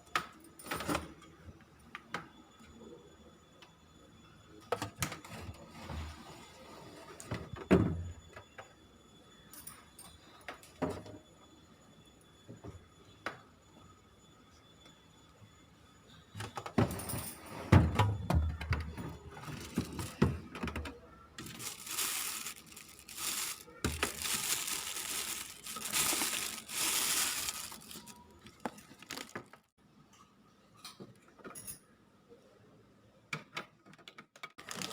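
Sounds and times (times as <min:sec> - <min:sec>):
objects knocking and clattering: 0:17.8 - 0:29.6
rustling crinkling noise: 0:19.4 - 0:20.4, 0:21.4 - 0:29.7, 0:34.6 - 0:34.9.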